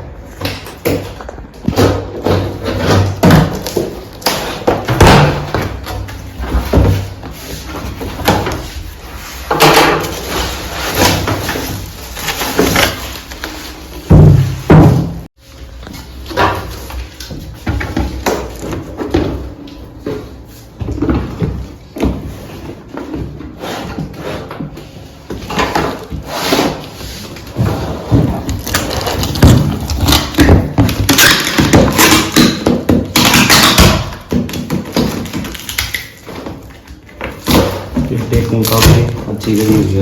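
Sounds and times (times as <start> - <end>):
packing tape peeling and tearing: 28.5 - 30.4.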